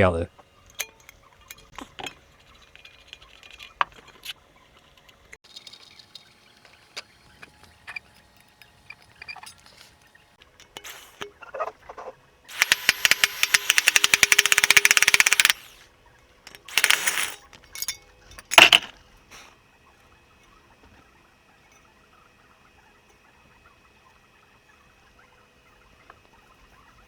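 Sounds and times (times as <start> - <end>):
impact wrench hammering: 12.5 - 15.6, 16.7 - 17.4.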